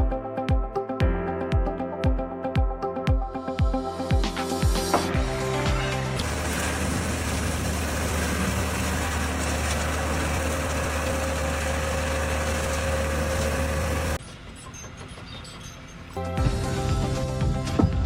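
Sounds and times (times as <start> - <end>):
heavy engine humming: 4.8 - 18.0.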